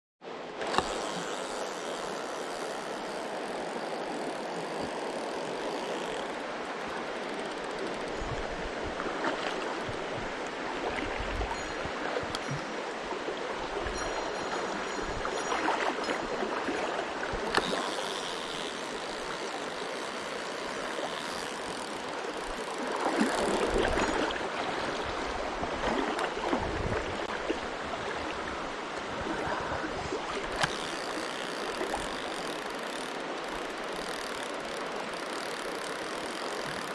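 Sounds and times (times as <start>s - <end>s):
stream water rushing: 0.2s - 36.9s.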